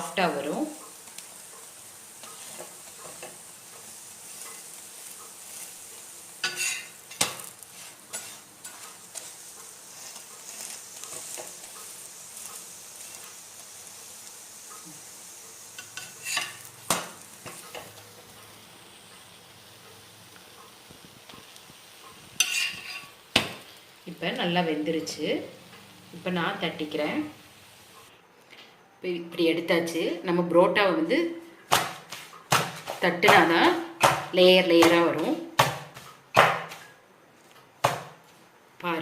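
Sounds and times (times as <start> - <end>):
flatbread sizzling in oil: 0.0 - 28.1, 31.5 - 38.6
utensil scraping griddle: 0.7 - 18.6, 21.0 - 23.7.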